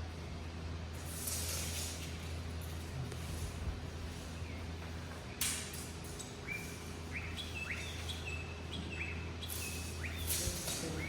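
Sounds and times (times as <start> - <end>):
steady low hum: 0.0 - 11.0
bird chirping: 6.4 - 11.0.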